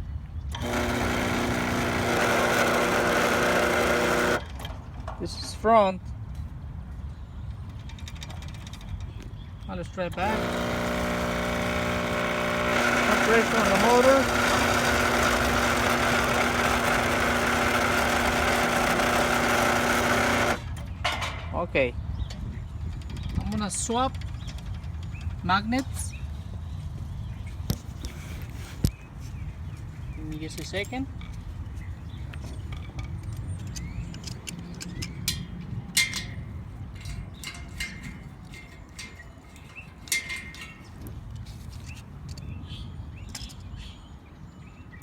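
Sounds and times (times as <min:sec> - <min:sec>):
electric motor humming: 0:00.6 - 0:04.5, 0:10.1 - 0:20.8.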